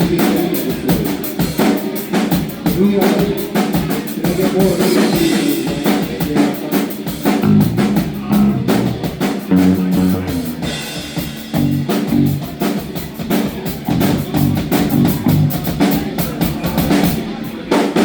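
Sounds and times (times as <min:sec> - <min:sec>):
drum kit playing: 0:07.1 - 0:17.3
guitar playing: 0:07.4 - 0:12.5, 0:13.9 - 0:15.5.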